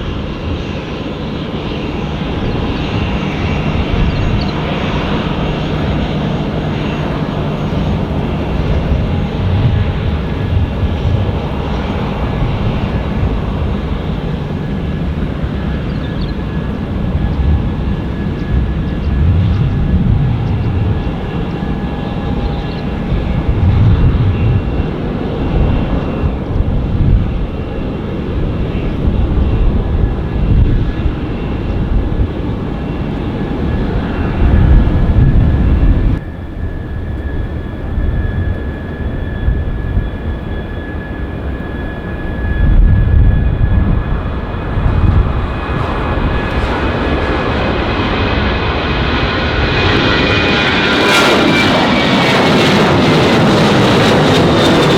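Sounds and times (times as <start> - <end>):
jet engines whining at idle: 0.0 - 54.9.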